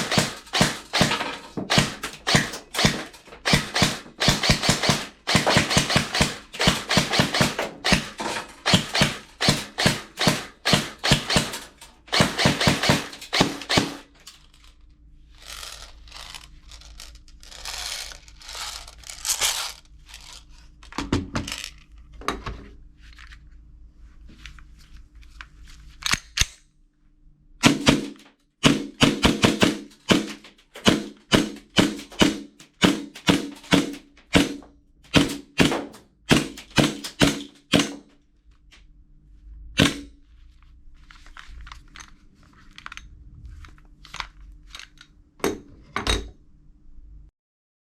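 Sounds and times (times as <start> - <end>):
toy guns firing: 0.0 - 14.4, 27.6 - 38.1, 39.8 - 40.2.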